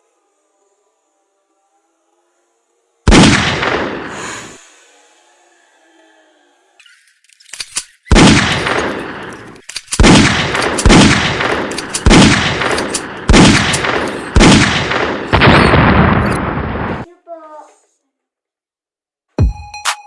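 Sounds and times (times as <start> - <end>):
gunshot blasts: 3.1 - 4.5, 8.1 - 9.2, 10.0 - 17.0.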